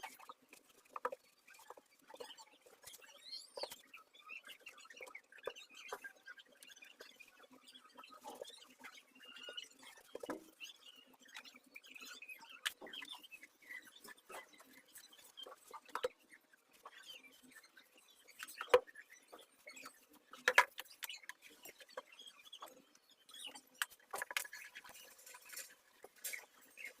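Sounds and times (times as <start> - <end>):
small clicks and taps: 20.4 - 22.0.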